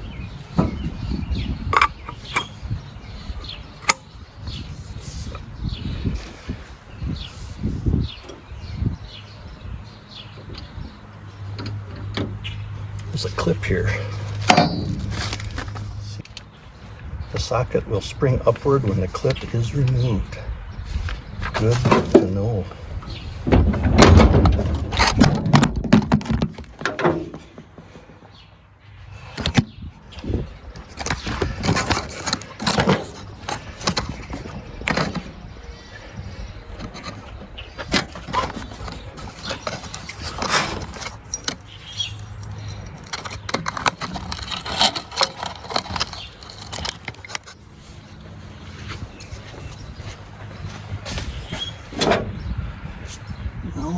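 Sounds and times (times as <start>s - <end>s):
floor jack metal clanks: 13.6s - 15.8s, 23.1s - 27.8s.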